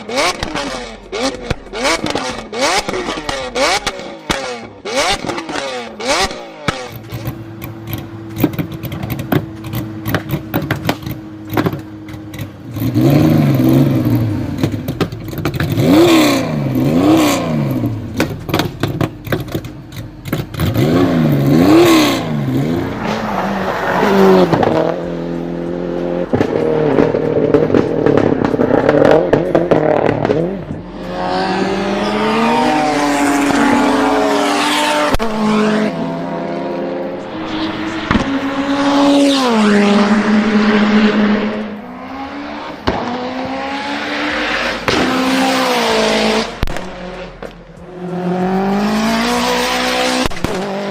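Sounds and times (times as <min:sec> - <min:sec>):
car engine revving: 0:00.0 - 0:50.9
exhaust pops: 0:00.1 - 0:13.0, 0:14.0 - 0:16.2, 0:17.2 - 0:21.0, 0:26.3 - 0:30.9, 0:37.2 - 0:40.0, 0:42.8 - 0:43.5, 0:44.8 - 0:47.8, 0:50.2 - 0:50.8.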